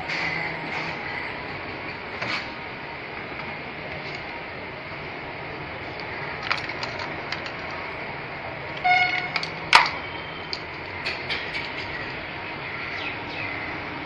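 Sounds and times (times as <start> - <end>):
machine parts clicking: 6.4 - 7.8, 8.7 - 12.2.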